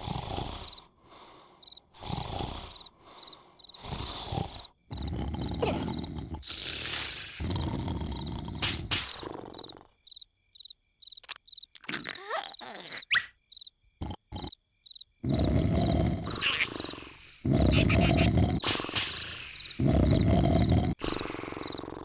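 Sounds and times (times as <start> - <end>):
cartoon snoring: 0.0 - 10.0, 11.8 - 13.2, 14.0 - 14.6, 15.2 - 22.0
crickets chirping: 0.0 - 22.0
squeaky cartoon effects: 11.2 - 13.4.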